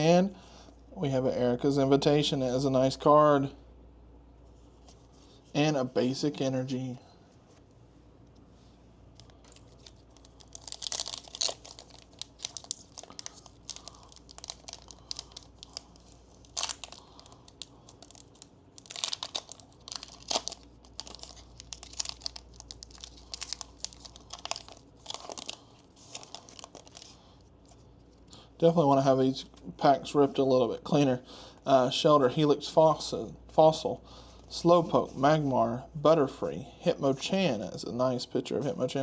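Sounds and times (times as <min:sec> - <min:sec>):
foil wrapper crinkling and tearing: 0:09.2 - 0:27.2.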